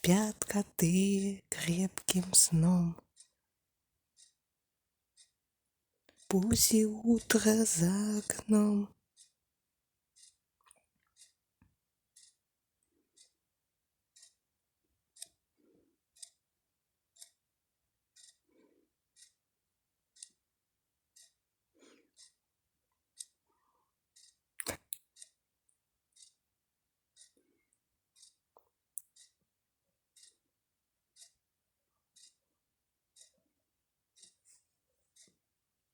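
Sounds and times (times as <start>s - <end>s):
faint regular ticking: 0.0s - 3.4s, 6.1s - 9.4s, 10.1s - 10.4s, 12.1s - 12.4s, 13.1s - 13.4s, 14.1s - 14.5s, 15.1s - 15.4s, 16.1s - 16.4s, 17.1s - 17.4s, 18.1s - 18.5s, 19.1s - 19.4s, 20.1s - 20.5s, 21.1s - 22.4s, 23.1s - 23.5s, 24.1s - 25.4s, 26.1s - 26.4s, 27.1s - 27.5s, 28.1s - 29.5s, 30.1s - 30.5s, 31.1s - 31.5s, 32.1s - 32.5s, 33.1s - 33.4s, 34.1s - 35.4s.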